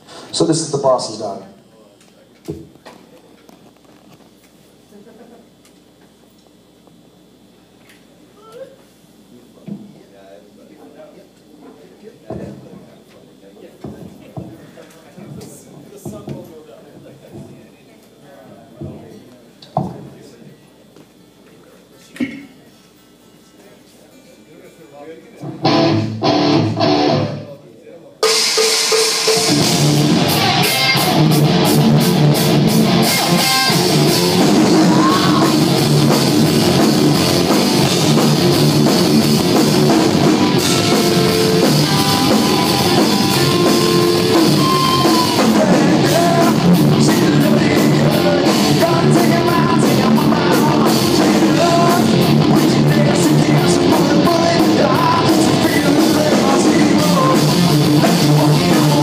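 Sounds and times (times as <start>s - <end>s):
drum kit: 25.4s - 27.4s, 28.2s - 59.0s
electric guitars: 25.4s - 27.5s, 28.2s - 59.0s
lead vocal singing: 34.5s - 35.7s, 40.8s - 59.0s.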